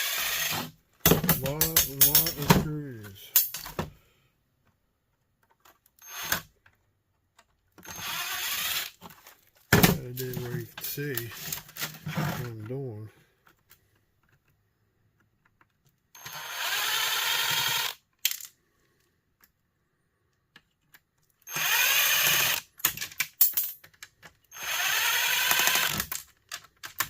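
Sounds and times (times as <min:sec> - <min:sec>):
drill-driver motor whine: 0:00.0 - 0:00.7, 0:06.0 - 0:06.5, 0:07.8 - 0:09.0, 0:16.2 - 0:18.0, 0:21.5 - 0:22.6, 0:24.5 - 0:26.0
clicks of screws and plastic: 0:01.1 - 0:02.7, 0:04.6 - 0:08.0, 0:13.4 - 0:16.1, 0:20.4 - 0:21.4, 0:22.8 - 0:24.5, 0:25.9 - 0:27.0.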